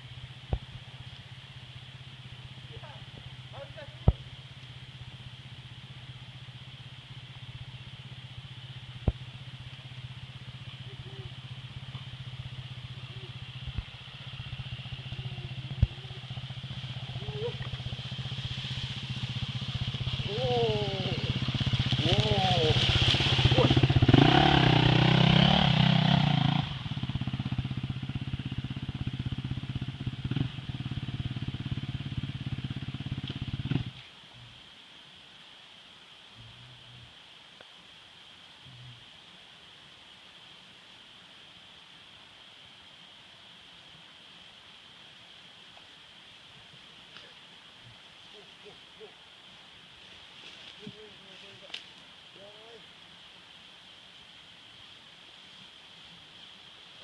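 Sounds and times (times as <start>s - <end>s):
vehicle engine idling: 0.0s - 34.7s.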